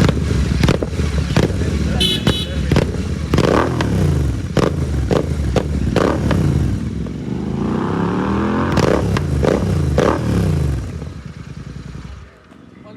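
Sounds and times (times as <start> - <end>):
exhaust pops and crackles: 0.0 - 6.5
motorcycle engine revving: 0.0 - 12.4.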